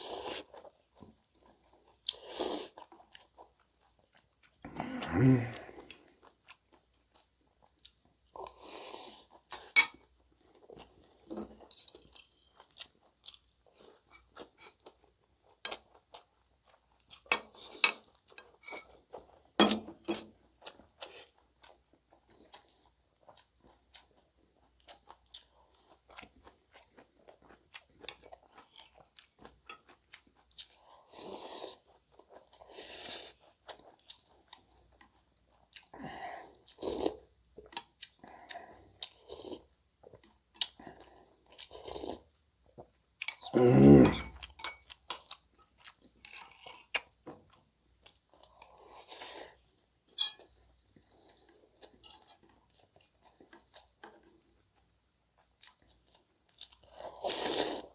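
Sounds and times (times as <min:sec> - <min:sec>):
chewing and crunching: 0:00.0 - 0:04.8, 0:05.5 - 0:43.6, 0:44.2 - 0:57.9.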